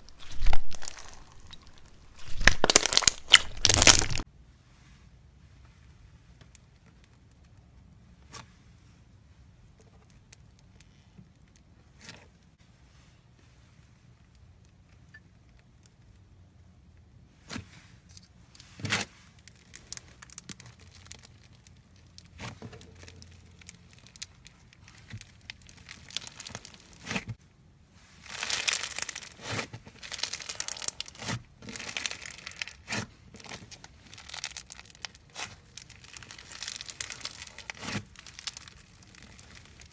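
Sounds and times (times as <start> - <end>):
slime crackling: 0.0 - 4.2, 19.5 - 27.3, 28.1 - 39.9.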